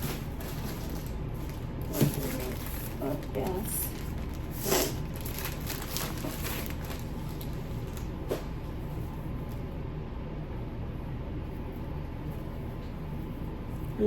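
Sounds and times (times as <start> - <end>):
packaging rustling: 0.0 - 8.5
steady low hum: 0.0 - 14.0.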